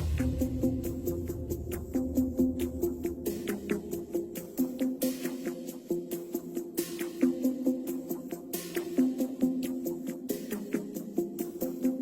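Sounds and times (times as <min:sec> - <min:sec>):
percussive beat: 0:00.0 - 0:04.2.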